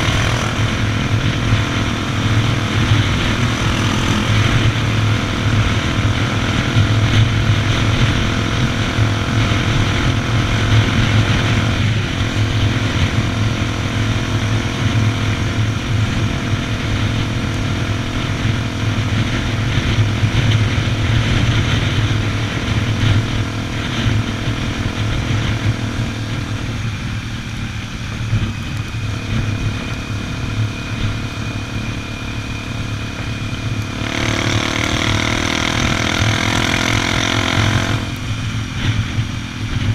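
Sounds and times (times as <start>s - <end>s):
motorcycle engine running: 0.0s - 39.9s
road and wind noise: 0.0s - 39.9s.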